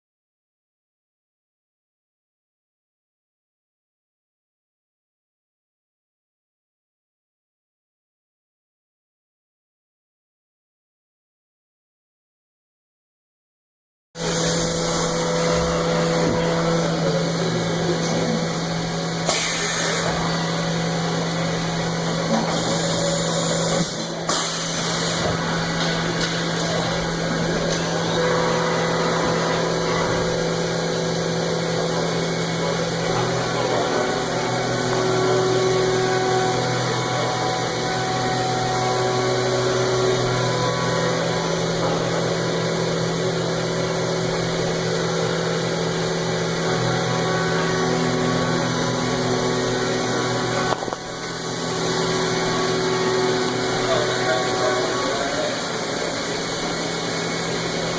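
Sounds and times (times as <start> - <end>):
machining center humming: 14.2 - 57.9.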